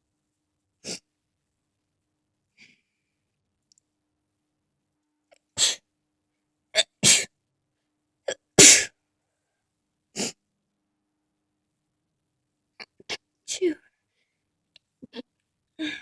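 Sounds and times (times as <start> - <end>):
person sneezing: 5.6 - 5.8, 6.8 - 7.3, 8.3 - 8.9, 10.2 - 10.4.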